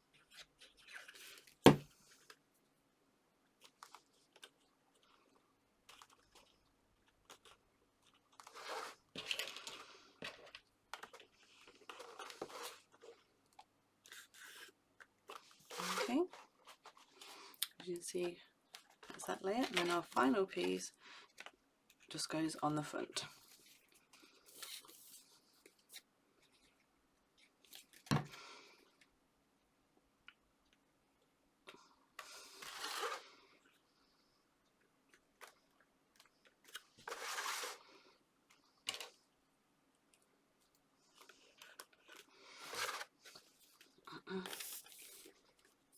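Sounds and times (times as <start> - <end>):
card rustling and scraping: 0.2 - 1.9, 8.3 - 13.1, 14.1 - 17.3, 23.4 - 26.0, 32.2 - 33.3, 36.6 - 37.8, 41.2 - 43.9, 44.5 - 45.4.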